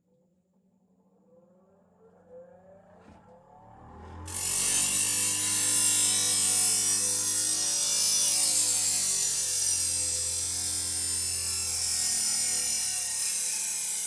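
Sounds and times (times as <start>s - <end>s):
chainsaw cutting wood: 4.2s - 14.0s.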